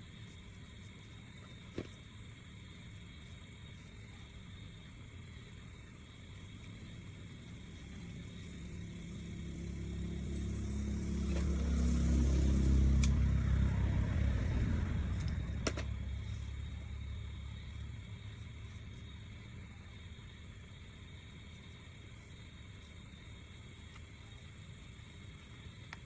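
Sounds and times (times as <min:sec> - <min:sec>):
motor vehicle passing by: 0:08.5 - 0:17.5.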